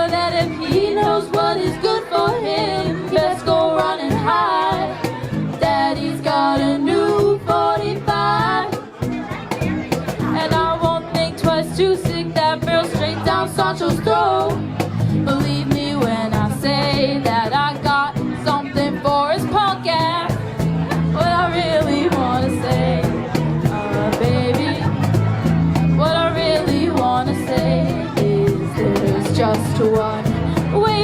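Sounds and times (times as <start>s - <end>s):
bass guitar: 0.0s - 31.0s
guitar: 0.0s - 31.0s
drum beat: 0.1s - 31.0s
person singing: 26.0s - 31.0s.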